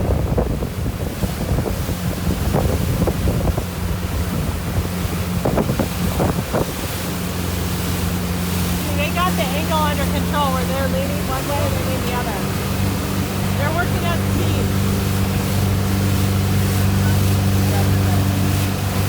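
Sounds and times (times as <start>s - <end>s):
motorboat engine running: 0.0s - 19.0s
rushing water: 0.0s - 19.0s
wind buffeting microphone: 0.0s - 19.0s
sharp splashes or knocks: 11.2s - 19.0s.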